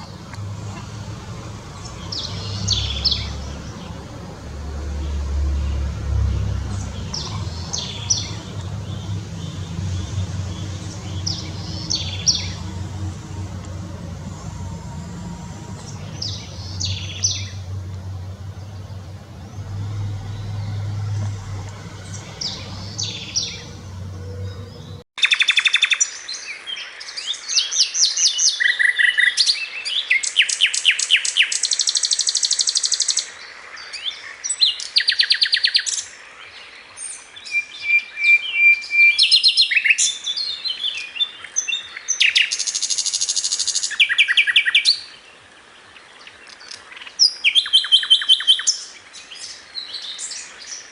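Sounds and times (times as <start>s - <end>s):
traffic rumble: 0.0s - 25.1s.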